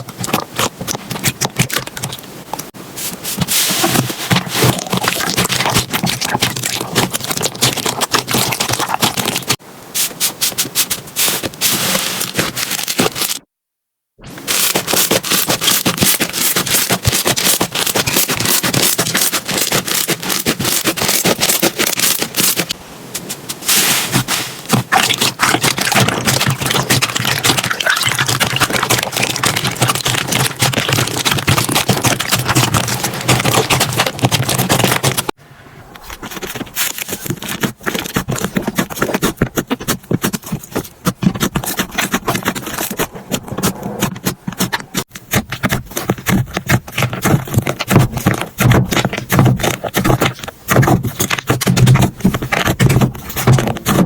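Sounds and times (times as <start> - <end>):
slime crackling and popping: 4.5 - 9.6, 14.4 - 22.8, 23.8 - 35.4.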